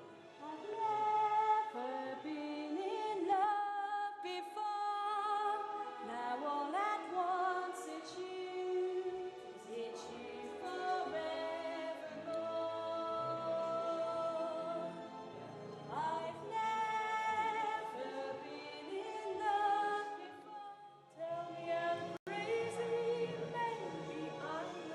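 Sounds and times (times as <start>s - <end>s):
vocal group singing in harmony: 5.3s - 14.9s.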